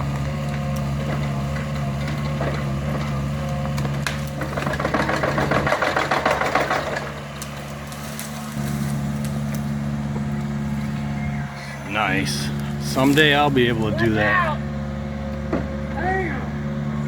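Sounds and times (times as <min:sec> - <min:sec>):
excavator diesel engine: 0:00.0 - 0:17.0
rough rattling of machine: 0:00.3 - 0:10.2.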